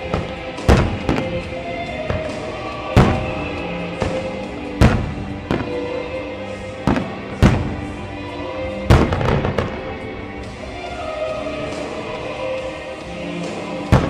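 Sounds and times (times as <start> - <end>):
fireworks booming: 0.0 - 6.0, 6.8 - 8.0, 8.8 - 10.0
background music: 0.0 - 14.0.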